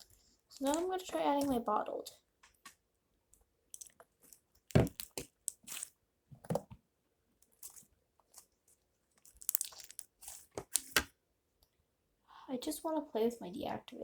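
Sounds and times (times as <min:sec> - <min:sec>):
slime squishing: 0:00.0 - 0:01.8, 0:03.7 - 0:06.0, 0:07.4 - 0:08.6, 0:09.2 - 0:11.1.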